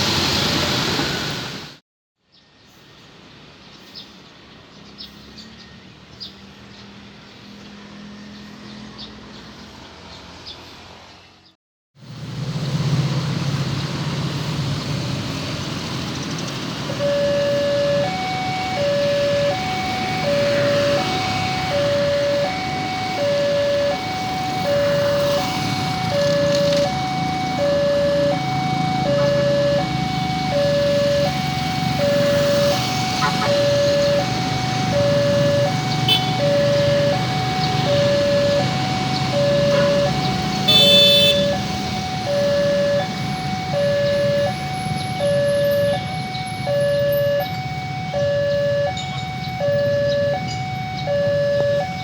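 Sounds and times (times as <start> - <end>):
low hum of traffic: 0.0 - 52.0
level crossing two-tone siren: 16.8 - 52.0.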